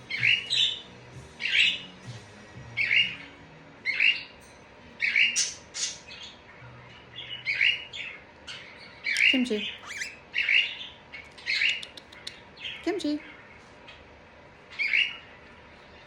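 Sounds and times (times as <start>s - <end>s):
parrot squawking: 0.1s - 0.8s, 2.8s - 3.2s, 3.8s - 4.3s, 5.0s - 6.3s, 7.4s - 13.4s, 14.7s - 15.3s.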